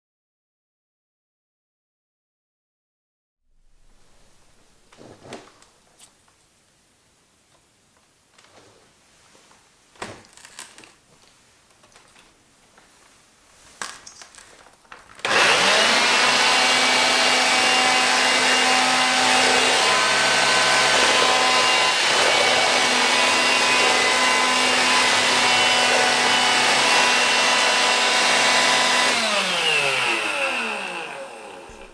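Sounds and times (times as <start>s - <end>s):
vacuum motor whining: 15.2s - 31.9s.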